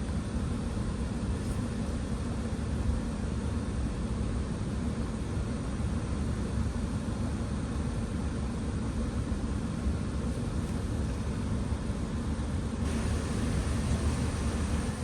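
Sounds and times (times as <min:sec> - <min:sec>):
hiss: 0:12.8 - 0:15.0
vehicle running low rumble: 0:12.8 - 0:15.0.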